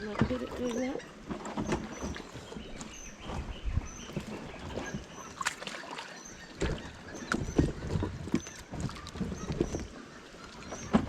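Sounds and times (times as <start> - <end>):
water splashing and sloshing: 0.0 - 11.0
knocks against a kayak: 10.8 - 11.0.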